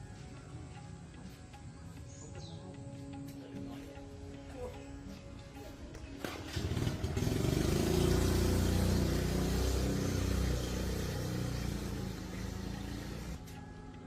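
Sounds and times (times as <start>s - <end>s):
vehicle engine running: 6.2s - 13.5s.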